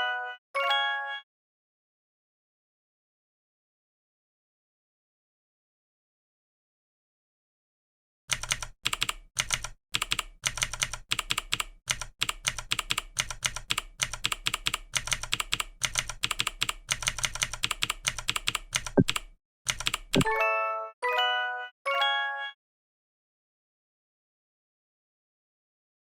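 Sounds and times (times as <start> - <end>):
fast typing on keyboard: 8.3 - 20.3.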